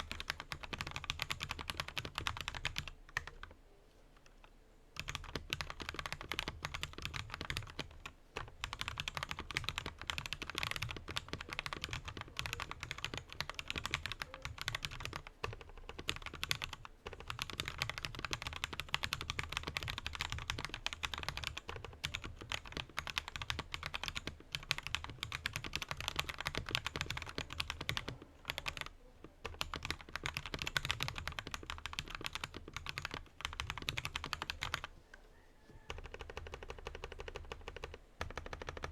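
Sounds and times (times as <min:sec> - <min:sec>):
mechanical keyboard typing: 0:00.0 - 0:03.5, 0:04.2 - 0:35.0, 0:35.8 - 0:38.9.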